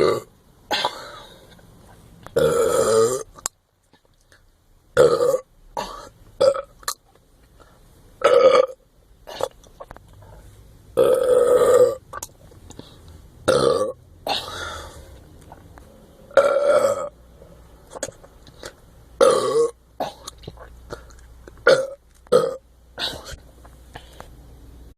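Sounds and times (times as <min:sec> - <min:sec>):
person burping: 0:00.0 - 0:01.3, 0:02.4 - 0:03.5, 0:05.0 - 0:07.0, 0:08.2 - 0:09.6, 0:11.0 - 0:12.3, 0:13.5 - 0:14.9, 0:16.3 - 0:17.2, 0:19.2 - 0:23.4.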